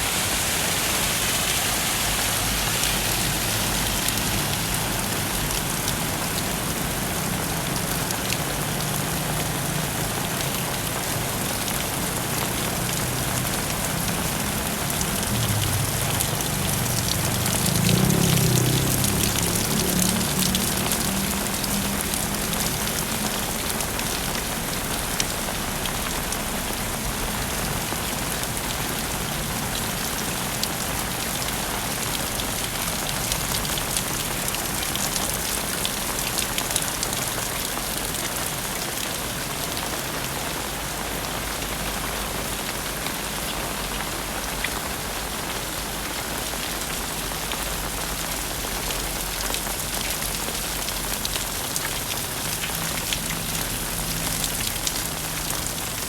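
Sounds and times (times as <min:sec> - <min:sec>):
heavy rain falling: 0:00.0 - 0:56.0.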